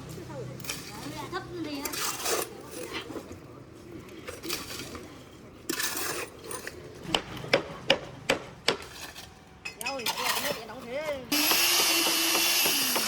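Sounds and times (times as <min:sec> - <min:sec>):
metal tools scraping on concrete: 0:00.6 - 0:03.4, 0:04.2 - 0:07.8, 0:08.8 - 0:11.8
sharp knocks: 0:07.1 - 0:08.9.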